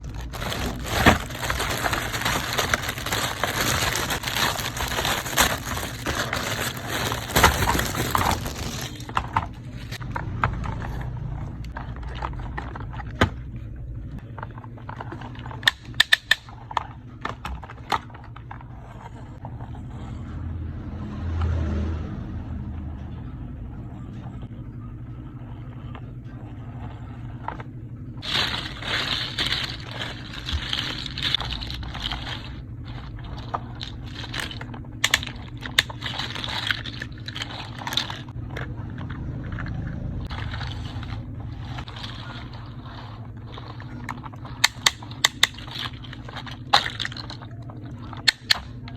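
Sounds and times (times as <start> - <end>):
toy scraping and rattling: 0.0 - 10.0, 28.2 - 48.6.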